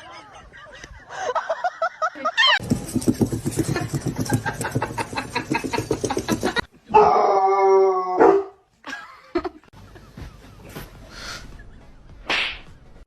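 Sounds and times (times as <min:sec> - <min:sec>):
dog barking: 0:08.2 - 0:08.6.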